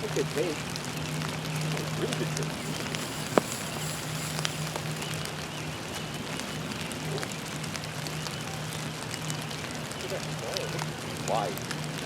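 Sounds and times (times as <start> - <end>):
rain drops ticking: 0.0 - 12.0
low hum: 2.6 - 5.3.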